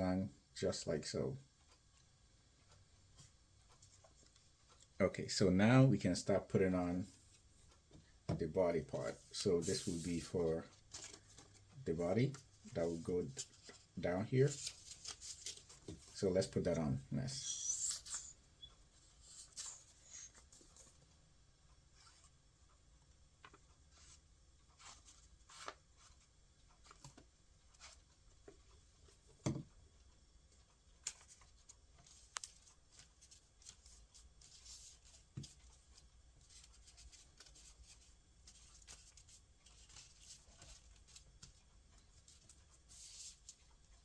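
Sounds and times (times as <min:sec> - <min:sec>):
paper rustling and tapping: 0:10.7 - 0:11.6, 0:14.6 - 0:16.2, 0:31.0 - 0:35.8.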